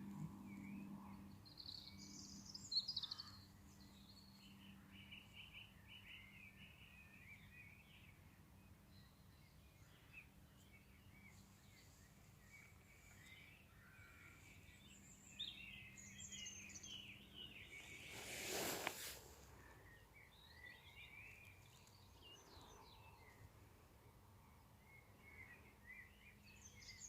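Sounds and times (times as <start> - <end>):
low steady hum: 0.0 - 5.4
small birds chirping: 0.0 - 27.0.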